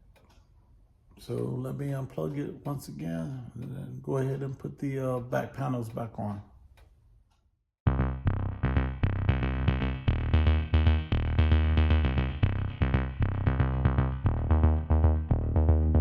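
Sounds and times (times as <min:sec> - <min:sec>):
drum machine beat: 0:07.9 - 0:16.0
synthesizer chords: 0:07.9 - 0:16.0.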